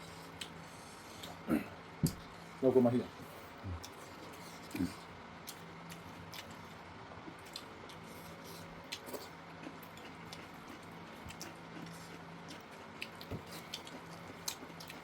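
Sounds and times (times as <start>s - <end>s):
faint steady hum: 0.0s - 15.0s
chewing mouth noises: 3.7s - 15.0s.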